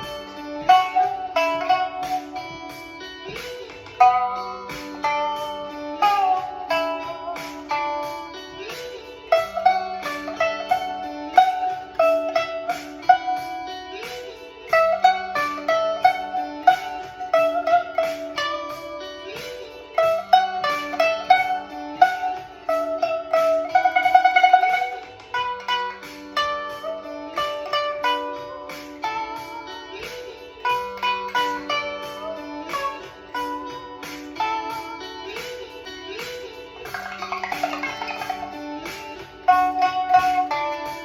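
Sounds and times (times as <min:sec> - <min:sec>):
pipa plucked melody: 0:00.0 - 0:41.0.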